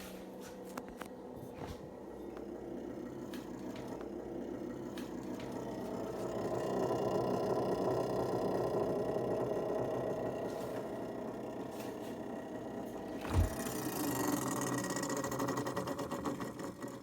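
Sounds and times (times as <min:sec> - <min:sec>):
fan whirring hum: 0:00.0 - 0:17.0.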